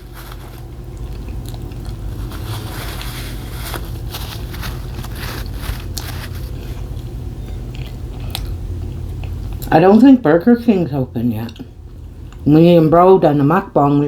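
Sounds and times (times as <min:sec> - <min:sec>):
person chewing: 0:00.0 - 0:09.7.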